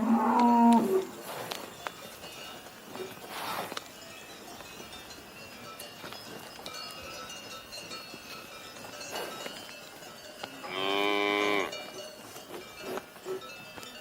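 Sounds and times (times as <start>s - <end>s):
cow mooing: 0.0s - 1.0s, 10.6s - 11.8s
small bells tinkling: 1.0s - 14.0s.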